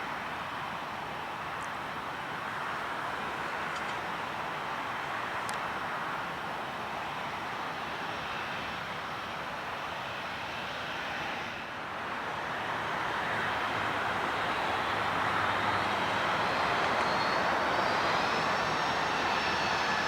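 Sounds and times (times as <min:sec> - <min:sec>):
jet engine rushing hiss: 0:15.2 - 0:20.0.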